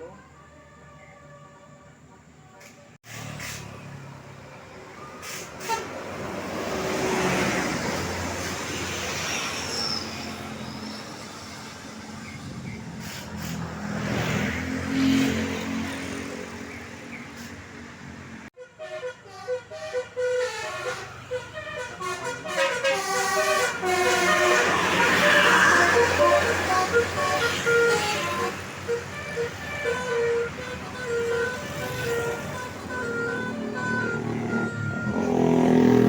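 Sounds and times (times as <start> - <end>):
buses passing: 0.0 - 36.0
musical bus horn: 5.1 - 10.0, 18.5 - 36.0.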